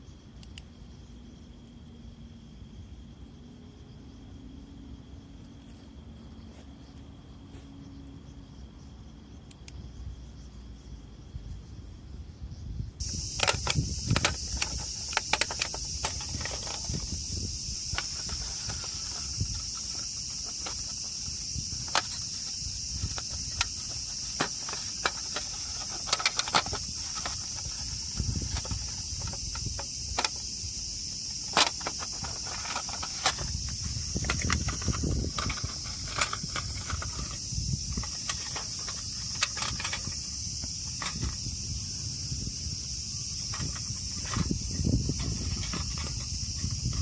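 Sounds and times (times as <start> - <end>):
insects trilling: 0.0 - 47.0
sharp clicks and knocks: 13.0 - 17.2.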